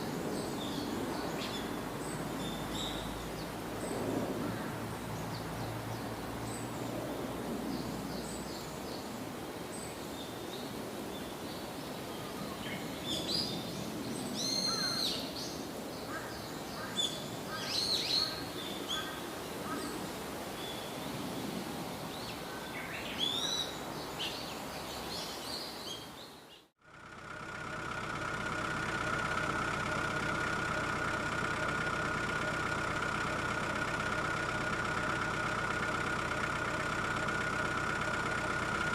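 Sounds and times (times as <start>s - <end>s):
birds chirping: 0.0s - 26.7s
vehicle engine idling: 0.0s - 38.9s.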